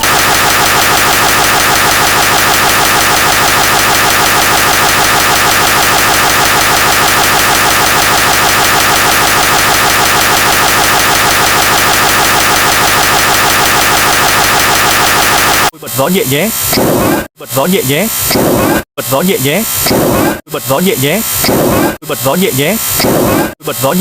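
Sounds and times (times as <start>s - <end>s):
harsh pulsing buzz: 0.0s - 15.7s.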